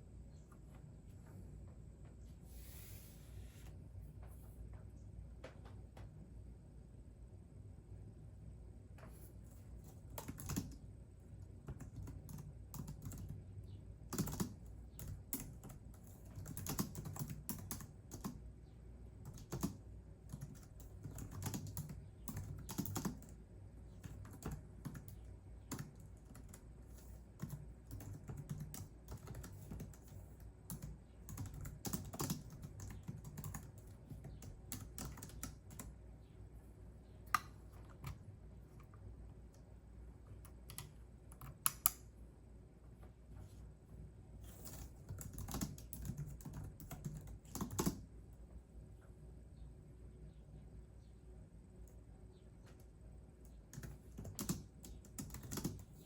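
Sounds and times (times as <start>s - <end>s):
keyboard keystroke clicks: 40.4s - 42.1s.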